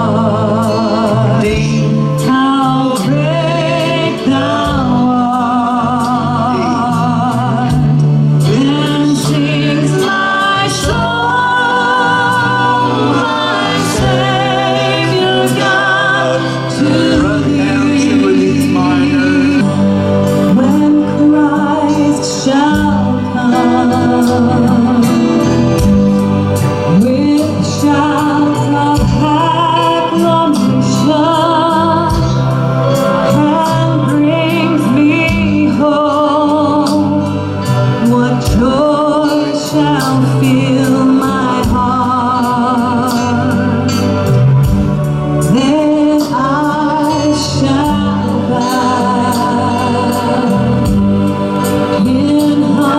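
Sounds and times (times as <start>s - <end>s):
singers holding wavering notes: 0.0s - 52.9s
steady drum beat: 9.9s - 35.9s, 41.6s - 52.9s
sustained low keyboard notes: 10.9s - 36.0s.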